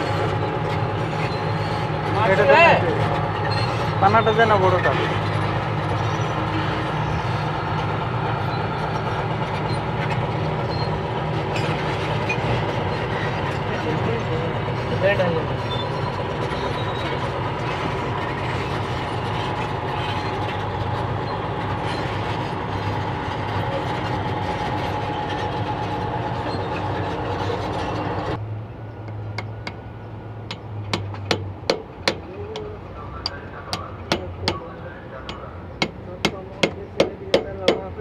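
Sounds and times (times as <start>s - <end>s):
engine running: 0.0s - 38.0s.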